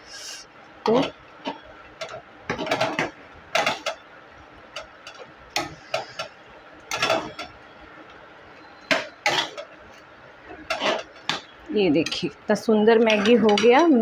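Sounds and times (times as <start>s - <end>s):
spoon scraping a pan: 8.8s - 12.3s.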